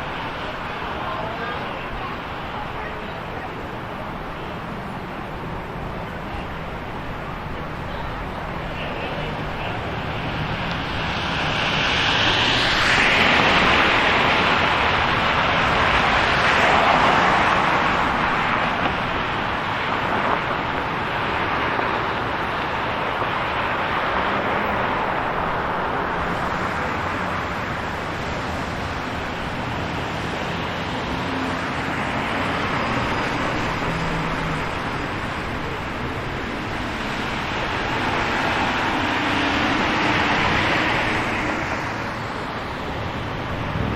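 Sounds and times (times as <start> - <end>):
cars passing: 0.0 - 43.9.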